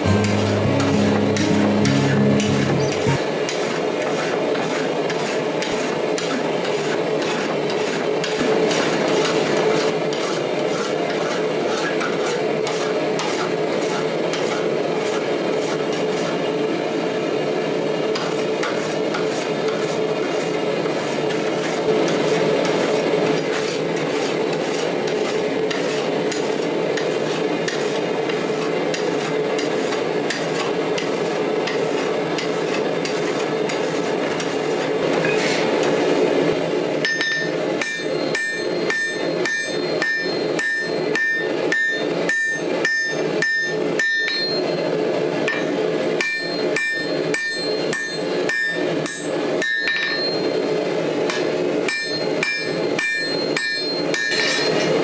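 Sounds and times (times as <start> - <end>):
hammer striking steel on anvil: 0.0 - 3.6, 37.0 - 44.8, 45.5 - 50.5, 51.3 - 54.9.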